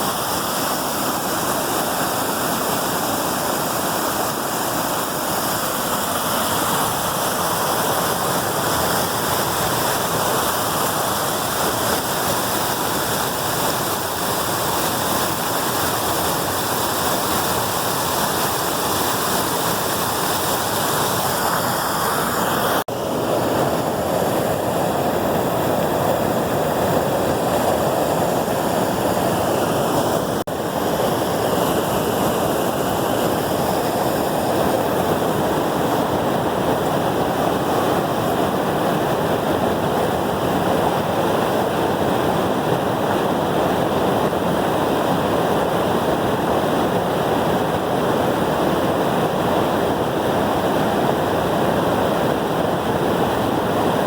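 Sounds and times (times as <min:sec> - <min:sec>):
waterfall rushing: 0:00.0 - 0:49.0.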